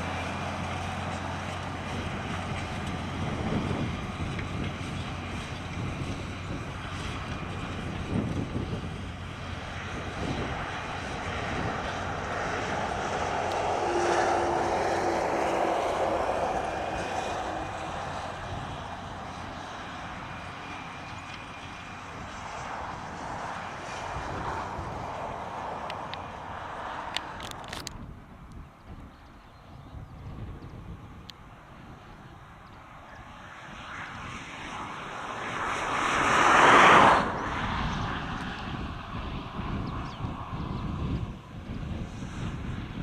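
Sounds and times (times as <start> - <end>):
tractor engine running: 0.0 - 28.1
passing road traffic: 0.0 - 43.0.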